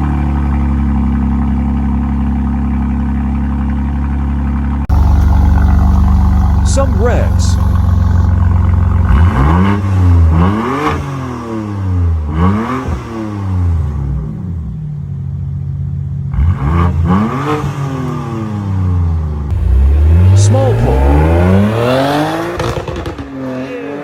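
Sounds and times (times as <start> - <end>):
car engine revving: 4.9 - 8.5
car engine idling: 4.9 - 8.8.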